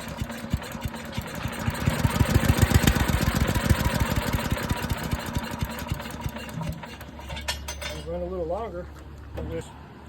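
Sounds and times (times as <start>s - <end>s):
small gasoline engine running: 0.0s - 7.2s.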